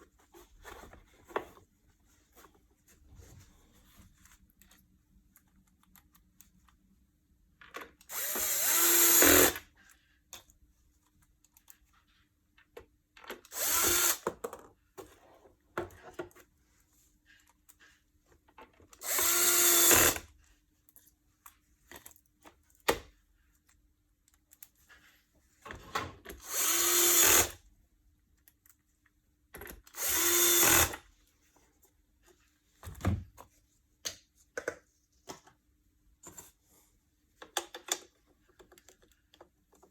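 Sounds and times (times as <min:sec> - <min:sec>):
power drill whining: 0:08.1 - 0:09.6, 0:13.5 - 0:14.2, 0:19.0 - 0:20.2, 0:26.4 - 0:27.5, 0:30.0 - 0:31.0
clicks and handling noises: 0:37.3 - 0:39.9.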